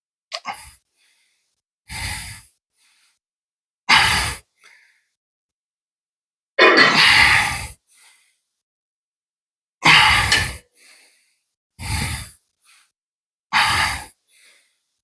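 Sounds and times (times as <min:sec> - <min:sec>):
man breathing heavily: 0:00.5 - 0:03.2, 0:07.0 - 0:08.5, 0:09.9 - 0:13.0, 0:13.6 - 0:15.0.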